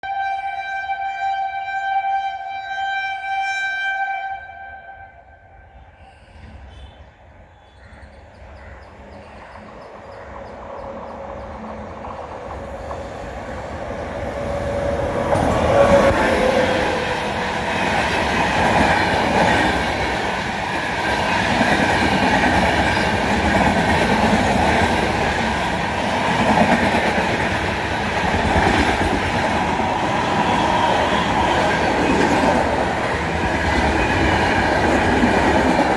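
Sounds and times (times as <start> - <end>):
train horn: 0.0 - 7.2, 14.6 - 18.8
train rumble: 8.4 - 35.9.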